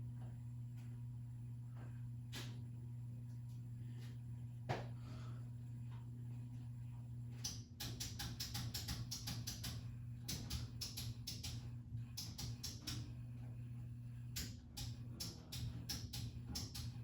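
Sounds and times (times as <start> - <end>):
ceiling fan humming: 0.0 - 17.0
fan rapid uneven clicking: 7.3 - 13.6, 14.3 - 17.0.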